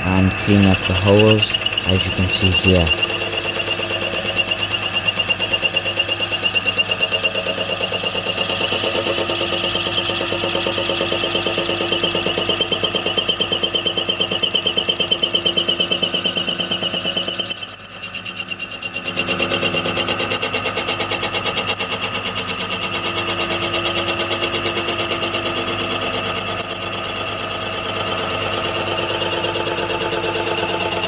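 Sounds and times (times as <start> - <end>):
milling machine pulsing whine: 0.0 - 7.2.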